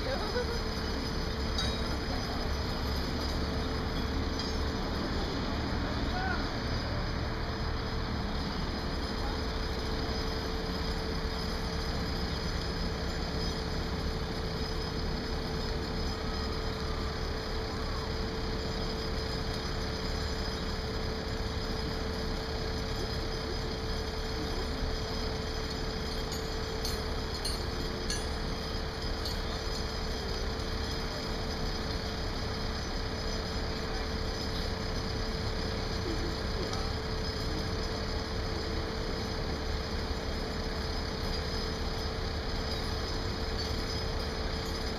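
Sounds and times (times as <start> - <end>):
heavy machinery engines droning: 0.0 - 44.9
faint metallic clinks: 0.1 - 4.9, 24.0 - 35.2.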